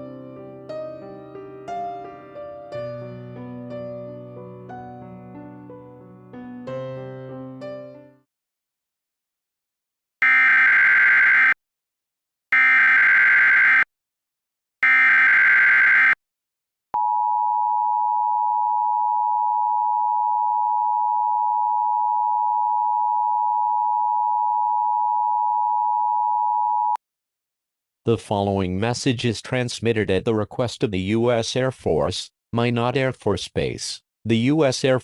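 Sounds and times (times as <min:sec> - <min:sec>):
harsh warbling data bursts: 0:10.2 - 0:11.6, 0:12.6 - 0:13.9, 0:14.8 - 0:16.2
two-tone attention signal: 0:10.2 - 0:11.6, 0:12.6 - 0:13.9, 0:14.8 - 0:16.2.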